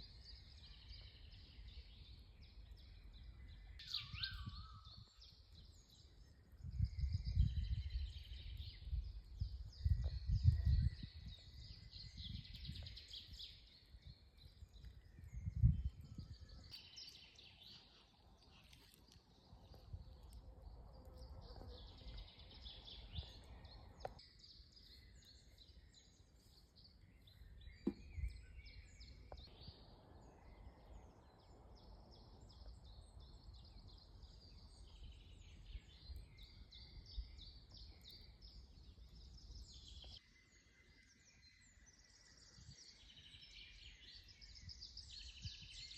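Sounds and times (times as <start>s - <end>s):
birds singing and chirping: 0.0s - 45.9s.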